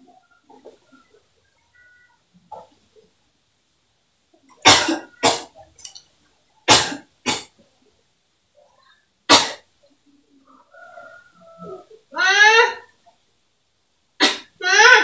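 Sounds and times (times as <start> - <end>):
woman coughing: 4.7 - 5.5.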